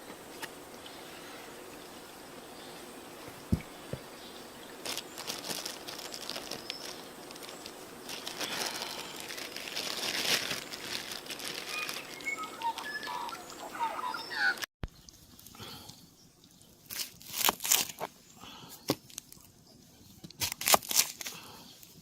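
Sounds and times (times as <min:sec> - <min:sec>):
short high chirps: 0:11.7 - 0:14.6.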